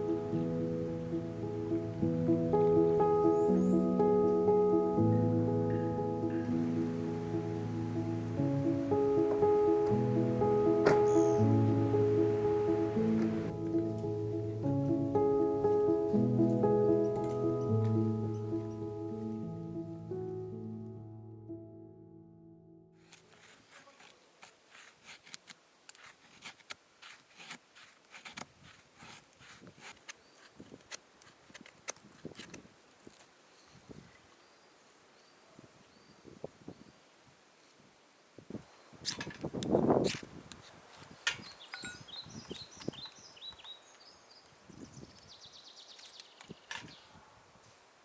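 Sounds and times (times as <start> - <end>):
bird calling: 10.6 - 13.5
small clicks and crackles: 23.0 - 33.4.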